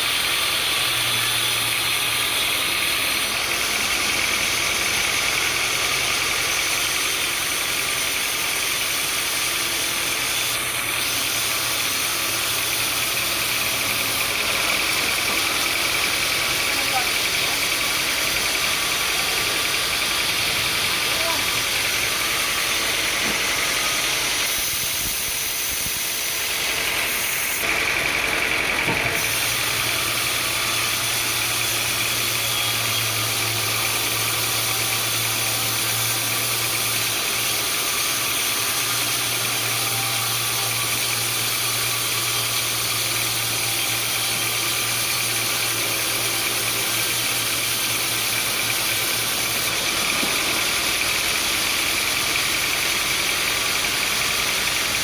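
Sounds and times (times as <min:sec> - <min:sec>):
sawmill machinery running: 0:00.0 - 0:55.0.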